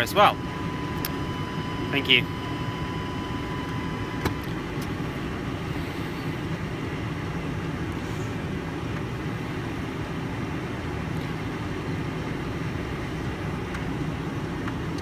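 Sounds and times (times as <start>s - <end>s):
steady beep tone: 0.0s - 4.4s
engine idling low rumble: 0.0s - 15.0s.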